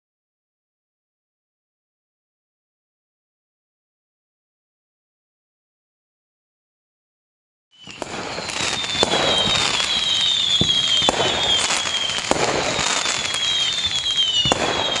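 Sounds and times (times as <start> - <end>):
firework whistles falling in pitch: 7.7 - 15.0
fireworks bangs and crackling: 7.8 - 15.0.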